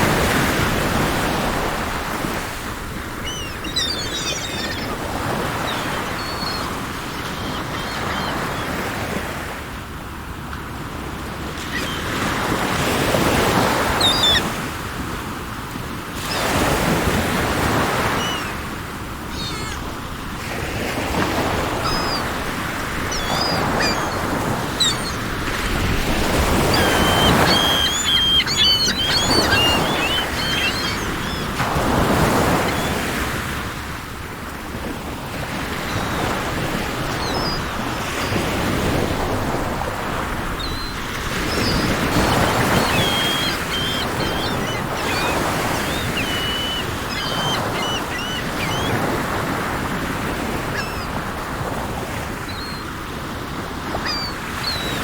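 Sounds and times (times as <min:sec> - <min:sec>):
sea waves washing in: 0:00.0 - 0:55.0
high bird chirps: 0:03.2 - 0:08.4, 0:23.1 - 0:25.2, 0:26.4 - 0:33.0, 0:40.6 - 0:49.1.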